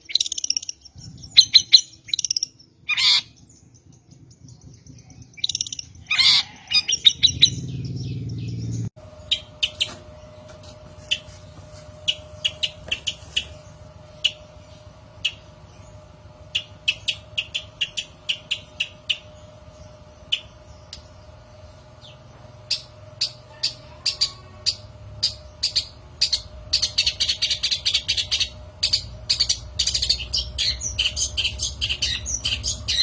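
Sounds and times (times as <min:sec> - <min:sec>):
bird chirps: 0:00.0 - 0:33.0
low buzz: 0:06.8 - 0:33.0
faint steady hum: 0:08.9 - 0:33.0.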